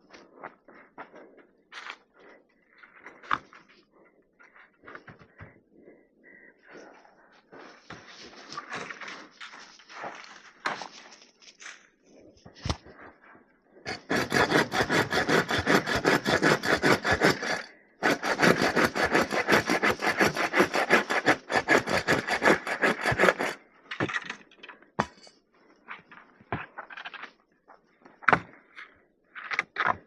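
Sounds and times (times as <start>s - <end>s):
hand saw cutting wood: 13.9s - 23.6s.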